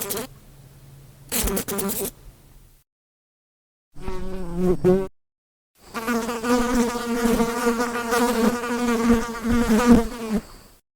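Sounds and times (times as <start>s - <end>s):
fly buzzing: 0.0s - 0.3s, 1.3s - 2.2s, 4.0s - 5.1s, 5.9s - 10.5s.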